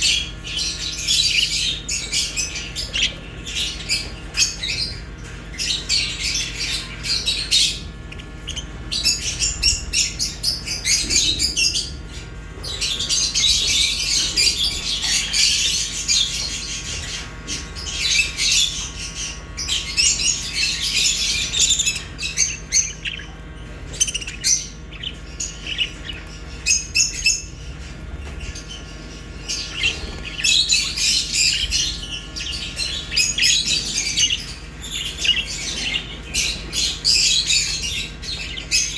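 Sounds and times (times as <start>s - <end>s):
birds chirping and chattering: 0.0s - 38.9s.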